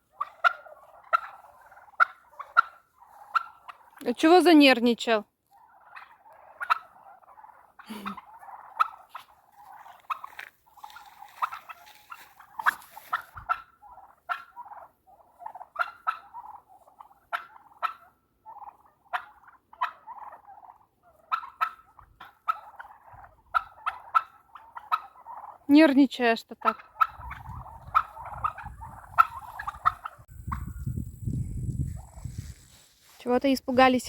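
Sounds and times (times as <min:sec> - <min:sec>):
turkeys calling: 0:00.0 - 0:04.8, 0:05.4 - 0:33.9.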